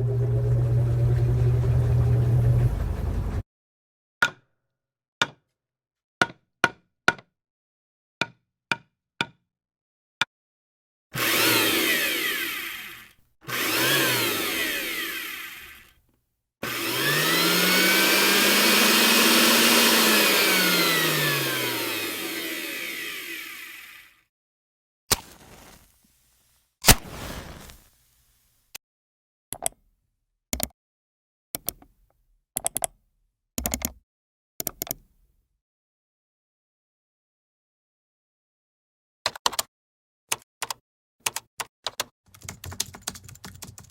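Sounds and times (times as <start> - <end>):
noise with low hum: 0.0 - 3.4.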